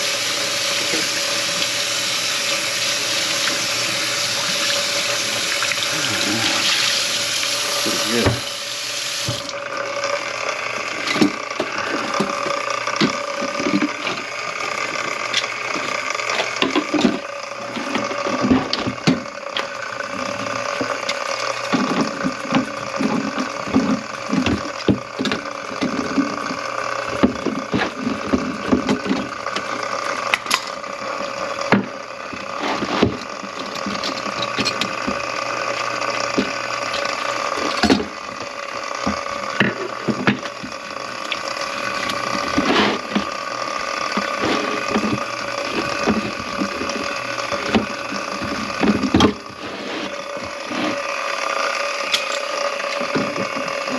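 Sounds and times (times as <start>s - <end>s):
water running into sink drain: 0.0s - 9.6s
steady mechanical hum: 0.0s - 53.9s.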